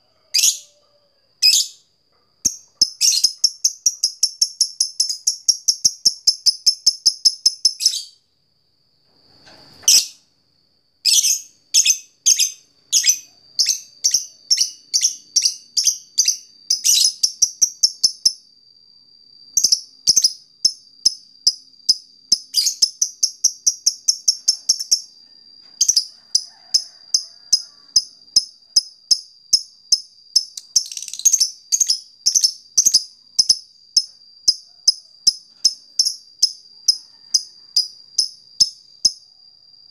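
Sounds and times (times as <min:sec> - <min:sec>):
lovebird chirping: 0:00.2 - 0:00.7, 0:01.4 - 0:08.2, 0:09.8 - 0:10.2, 0:11.0 - 0:18.4, 0:19.6 - 0:25.1, 0:28.0 - 0:39.2
thin steady high tone: 0:11.0 - 0:39.9.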